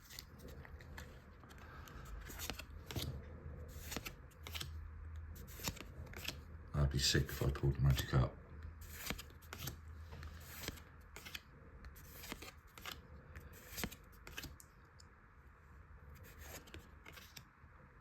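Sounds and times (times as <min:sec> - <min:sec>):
trading cards flicking and rustling: 0:00.0 - 0:04.8, 0:05.4 - 0:06.5, 0:08.8 - 0:14.7, 0:16.2 - 0:17.5.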